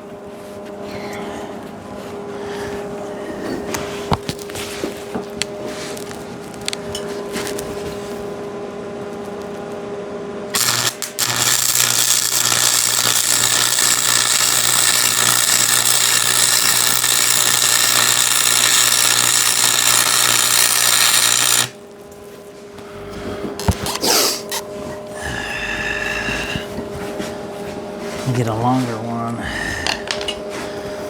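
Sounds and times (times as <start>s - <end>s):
welding arc crackling hiss: 10.5s - 21.8s
welder humming: 10.5s - 31.0s.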